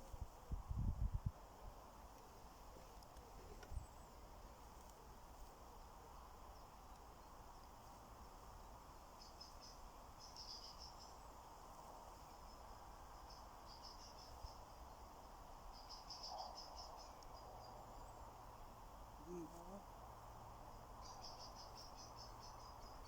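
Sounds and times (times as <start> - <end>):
faint high-pitched chirping: 9.1 - 11.4, 12.1 - 18.4, 20.7 - 23.0.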